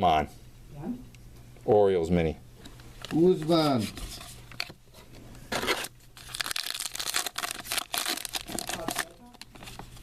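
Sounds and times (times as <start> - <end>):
wrapper tearing and crinkling: 5.6 - 10.0.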